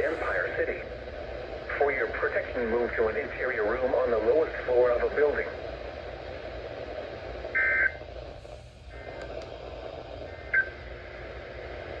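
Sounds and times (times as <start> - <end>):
radio hiss: 0.0 - 12.0.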